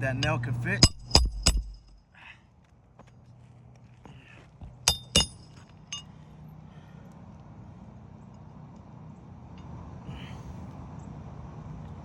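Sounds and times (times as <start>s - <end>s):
hammer striking metal tool: 0.0s - 2.0s, 4.9s - 6.1s.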